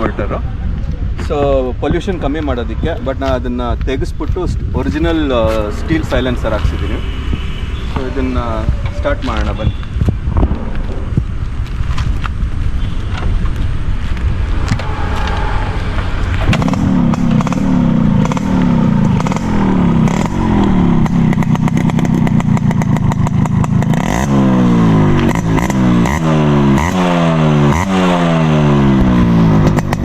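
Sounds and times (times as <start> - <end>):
engine revving in throttle blips: 12.6 - 30.0
two-stroke motorcycle engine running: 16.5 - 30.0.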